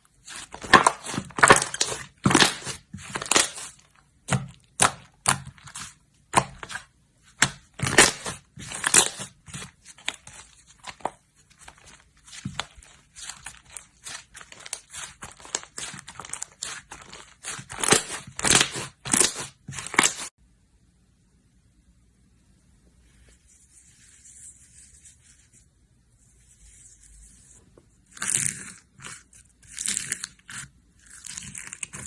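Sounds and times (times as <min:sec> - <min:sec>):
slime crackling and crunching: 0:00.2 - 0:06.8, 0:07.4 - 0:20.3, 0:28.1 - 0:32.0.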